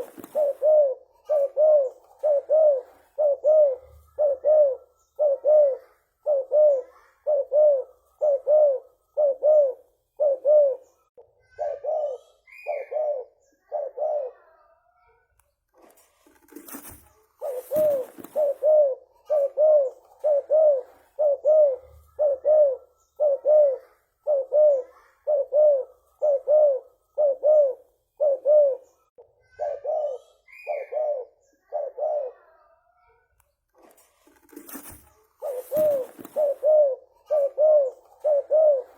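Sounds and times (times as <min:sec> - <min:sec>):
dove cooing: 0:00.0 - 0:14.7, 0:16.4 - 0:32.8, 0:34.4 - 0:38.9
brief rustling: 0:15.7 - 0:18.7, 0:33.7 - 0:36.7.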